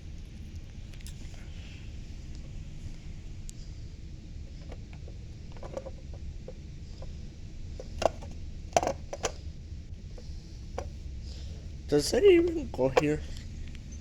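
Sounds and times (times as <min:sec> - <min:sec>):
steady low hum: 0:00.0 - 0:14.0
light plastic clicks and clacks: 0:04.6 - 0:06.0, 0:07.8 - 0:09.4.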